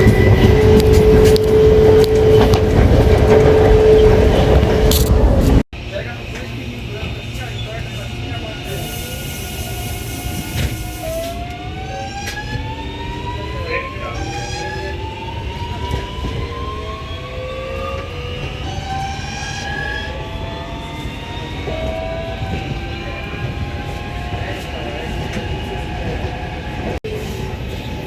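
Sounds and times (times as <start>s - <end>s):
train running rumble: 0.0s - 11.6s
train inverter whining: 0.0s - 28.0s.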